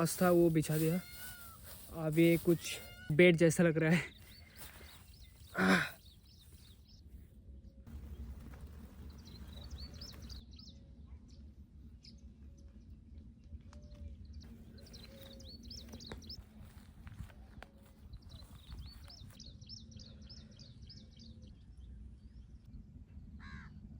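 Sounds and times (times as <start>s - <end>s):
small birds chirping: 0.0s - 7.2s, 7.9s - 10.8s, 13.8s - 21.8s.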